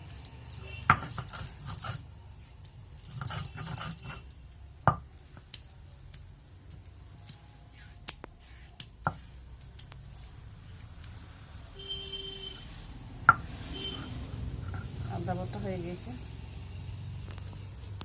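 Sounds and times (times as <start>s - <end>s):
stone scraping on stone slab: 0.8s - 2.1s, 3.0s - 4.3s
stone knocking on stone: 4.8s - 5.1s.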